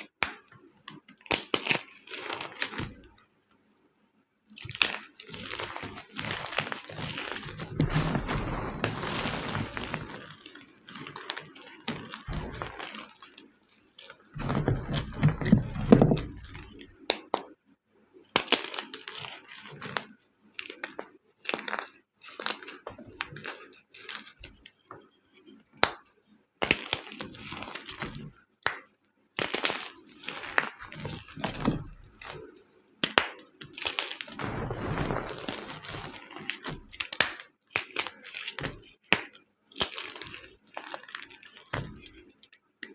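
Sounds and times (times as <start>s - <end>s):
chalk being crushed and crunching: 6.6s - 10.6s, 34.4s - 37.4s.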